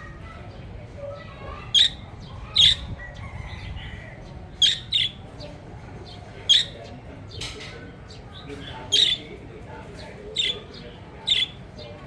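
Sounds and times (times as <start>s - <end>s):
budgerigar chatter: 0.0s - 12.0s
budgerigar squawks: 1.7s - 2.9s, 4.6s - 5.2s, 6.5s - 6.8s, 8.9s - 9.2s, 11.2s - 11.6s.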